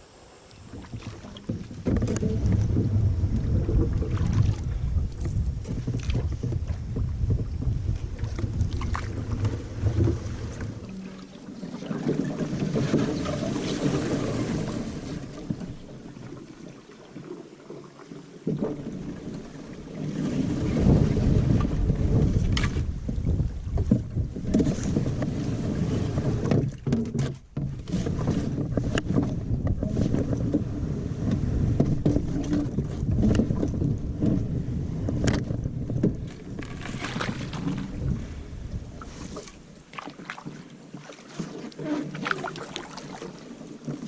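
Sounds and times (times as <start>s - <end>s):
wind buffeting microphone: 0.0s - 11.0s, 20.0s - 26.9s, 27.8s - 39.4s
canoe paddling in water: 0.0s - 44.0s.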